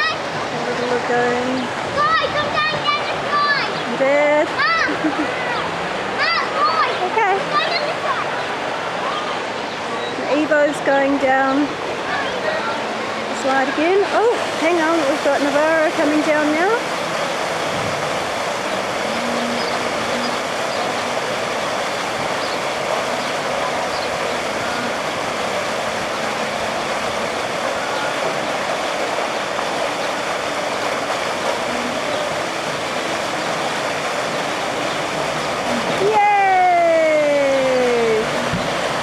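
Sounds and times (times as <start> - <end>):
faint distant voices: 0.0 - 39.0
water pouring into pool: 14.2 - 39.0.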